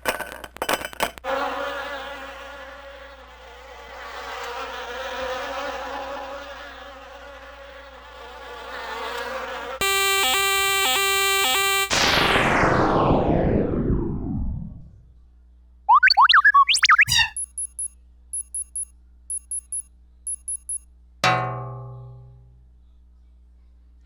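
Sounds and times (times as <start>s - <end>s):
electronic beeping tones: 9.8s - 13.2s, 15.9s - 20.8s
long buzzing: 9.8s - 14.9s
loud noisy burst: 9.8s - 15.0s
sharp clicks: 15.9s - 20.8s.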